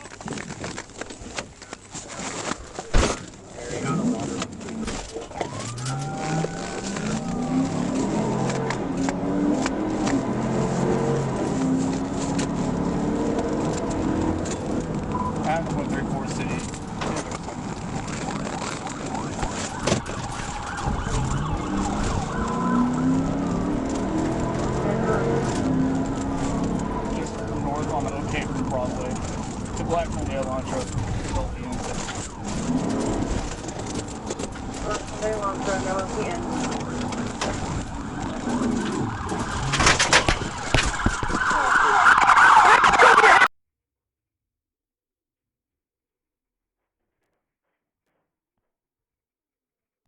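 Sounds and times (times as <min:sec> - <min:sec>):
car engine and road noise: 0:00.0 - 0:43.5
police siren wailing: 0:03.6 - 0:43.5.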